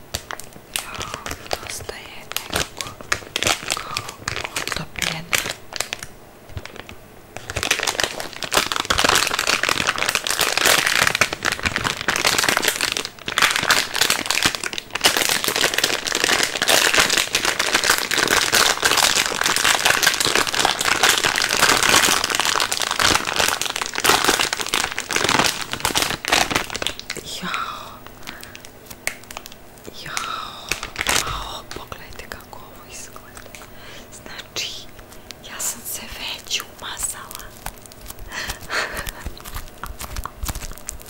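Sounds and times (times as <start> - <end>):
hands squishing foam: 35.0 - 41.0.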